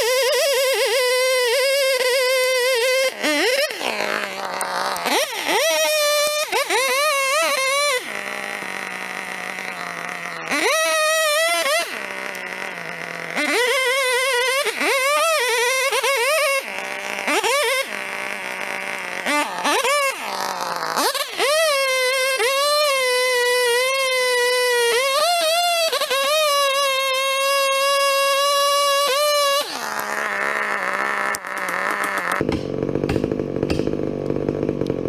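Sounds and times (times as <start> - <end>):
two-stroke chainsaw revving: 0.0 - 35.0.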